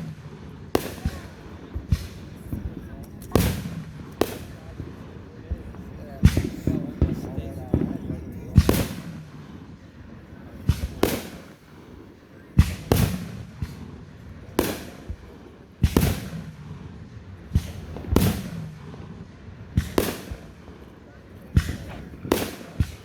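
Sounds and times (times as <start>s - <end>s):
firework aerial bang: 0.0s - 9.6s, 10.5s - 11.7s, 12.6s - 14.0s, 15.8s - 20.6s, 21.6s - 23.0s.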